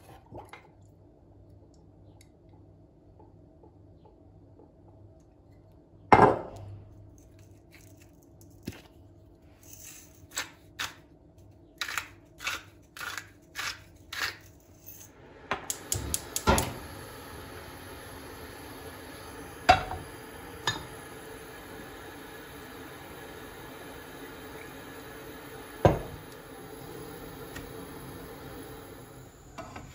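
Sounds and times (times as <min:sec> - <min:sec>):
steady hiss: 0:15.1 - 0:29.9.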